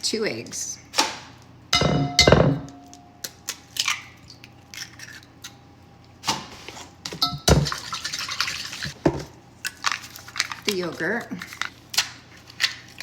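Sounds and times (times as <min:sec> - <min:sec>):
bowl ringing: 0:01.8 - 0:03.2, 0:07.2 - 0:07.5.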